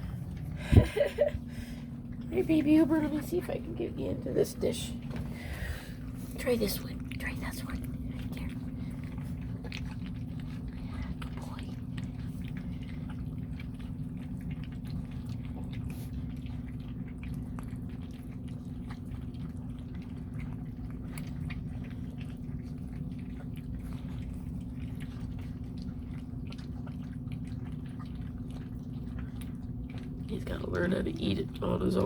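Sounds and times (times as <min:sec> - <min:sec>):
puppies eating wet food: 0:00.0 - 0:32.0
steady low hum: 0:00.0 - 0:32.0.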